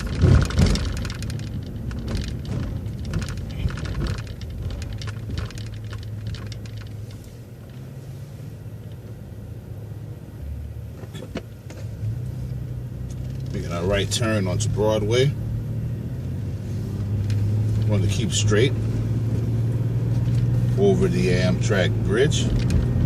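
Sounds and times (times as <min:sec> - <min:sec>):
clicks and rattles: 0:00.0 - 0:07.8, 0:22.3 - 0:23.0
bus diesel engine humming: 0:00.0 - 0:23.0.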